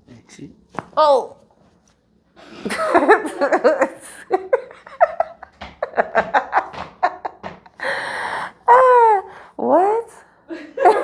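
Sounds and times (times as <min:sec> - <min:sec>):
breathy wheeze: 0:07.8 - 0:09.5.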